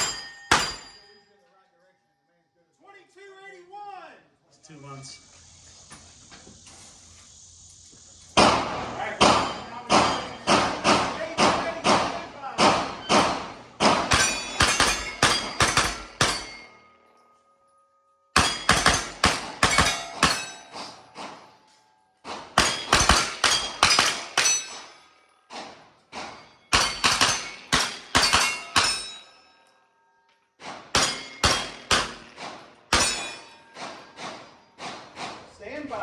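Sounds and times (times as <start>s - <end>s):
steel targets ringing: 0.0s - 1.6s, 8.4s - 34.8s
rapid gunshots: 18.4s - 20.4s, 22.3s - 24.6s, 26.2s - 29.0s, 30.7s - 33.2s.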